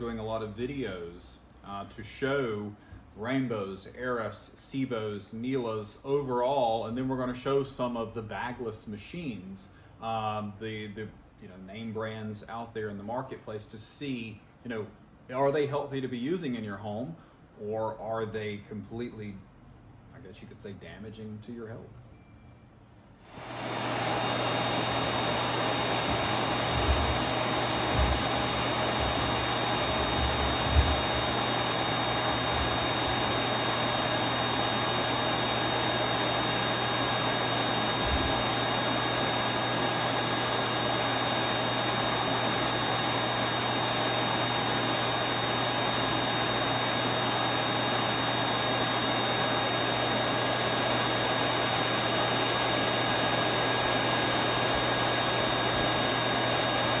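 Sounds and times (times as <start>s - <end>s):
vacuum cleaner motor running: 23.2s - 57.0s
low bumps from handling machine: 26.1s - 31.5s, 38.0s - 38.4s.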